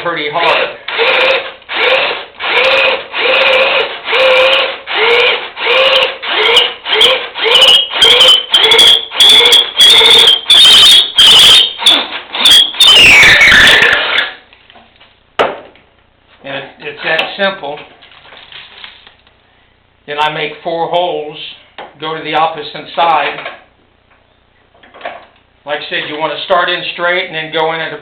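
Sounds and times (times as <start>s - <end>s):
power drill boring into wood: 0.4s - 14.3s.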